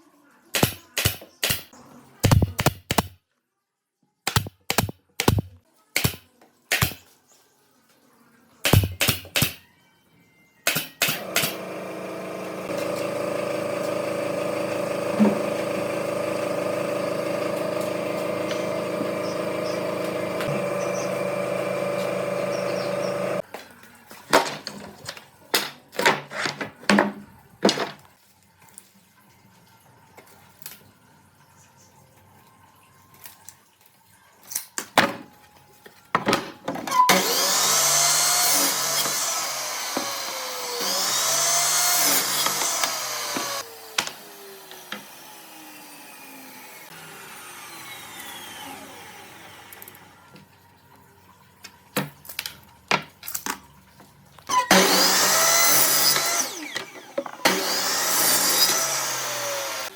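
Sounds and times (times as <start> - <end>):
power tool whining: 11.0 - 23.4, 36.9 - 50.2, 54.5 - 59.9
motor running steadily: 11.2 - 23.4.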